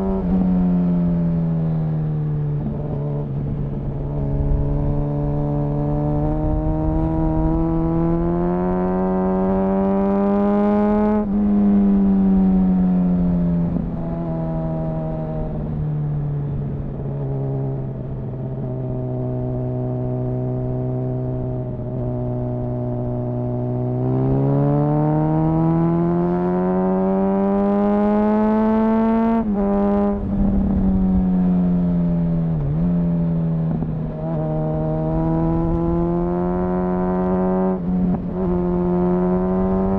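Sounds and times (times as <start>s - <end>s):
motorcycle engine accelerating: 0.0s - 39.9s
wind rush: 29.5s - 32.4s.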